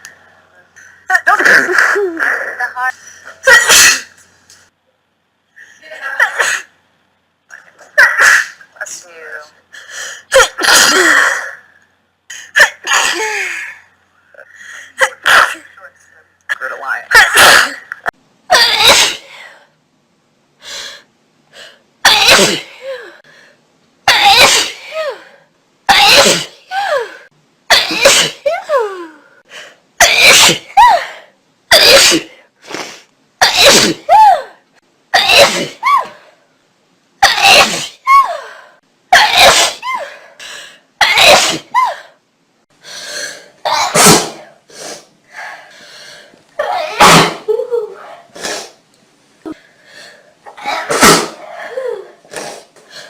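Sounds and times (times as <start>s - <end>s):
person sneezing: 3.4s - 4.1s, 22.1s - 22.8s, 24.1s - 25.0s, 25.9s - 26.6s, 27.7s - 28.5s, 30.0s - 31.0s, 31.7s - 34.3s, 35.2s - 36.1s, 37.2s - 38.2s, 39.2s - 40.2s, 41.0s - 42.0s, 43.7s - 45.0s, 46.6s - 48.8s, 50.5s - 51.6s.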